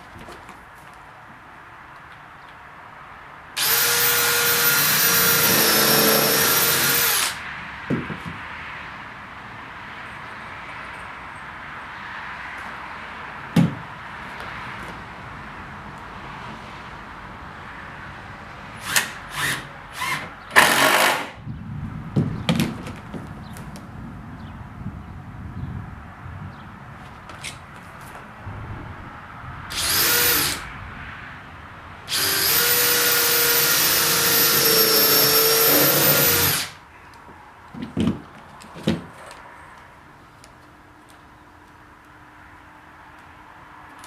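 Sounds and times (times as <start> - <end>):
power drill drilling into wood: 3.6 - 7.4, 18.8 - 21.3, 29.7 - 30.6, 32.1 - 36.8.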